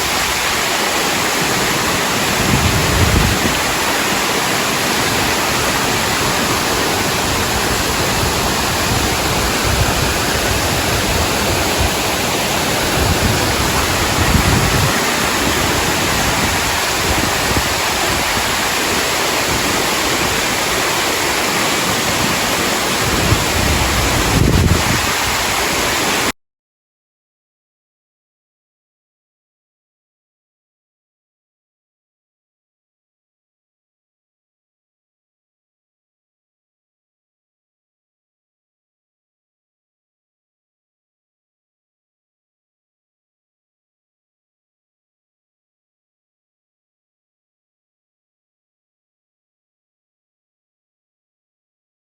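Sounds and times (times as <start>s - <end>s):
wind buffeting microphone: 0.0s - 26.2s
waterfall rushing: 0.0s - 26.3s.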